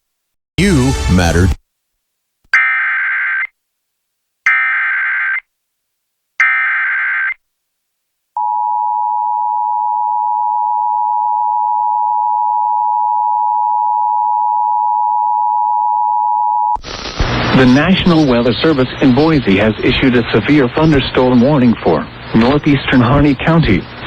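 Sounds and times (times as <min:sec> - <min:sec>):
two-tone alarm: 0:02.6 - 0:03.5, 0:04.5 - 0:05.5, 0:06.4 - 0:07.4, 0:08.4 - 0:16.8
data bursts: 0:16.8 - 0:24.0.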